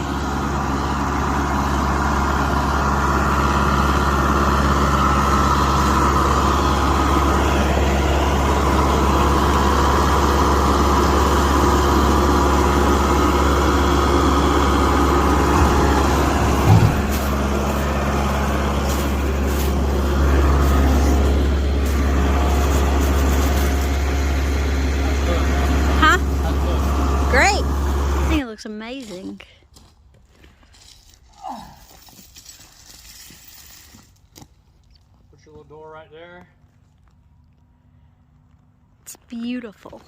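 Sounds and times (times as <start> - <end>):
large engine idling: 0.0 - 29.7.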